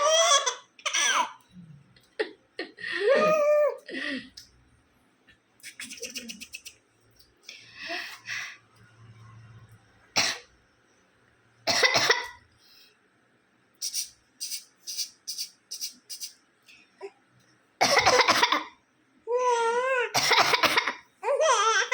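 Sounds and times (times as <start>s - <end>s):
person coughing: 17.8s - 18.6s, 20.2s - 21.0s.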